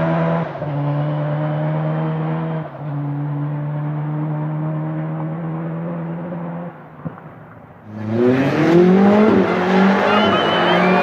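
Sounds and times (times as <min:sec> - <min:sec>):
engine revving up hard: 0:07.9 - 0:11.0.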